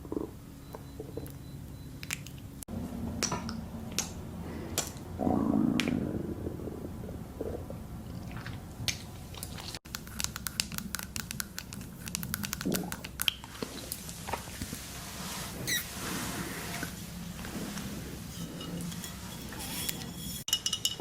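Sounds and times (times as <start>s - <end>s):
stomach gurgling: 0.0s - 1.4s, 4.7s - 9.8s, 11.8s - 14.8s.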